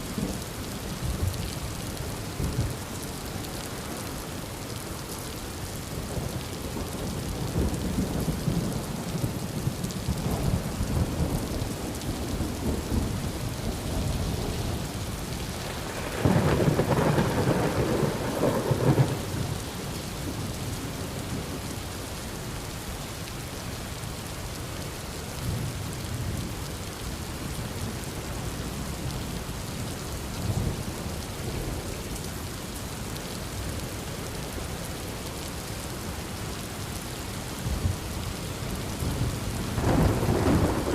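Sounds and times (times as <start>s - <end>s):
heavy rain falling: 0.0s - 40.9s
rolling thunder rumbles: 7.4s - 20.5s, 39.0s - 40.9s.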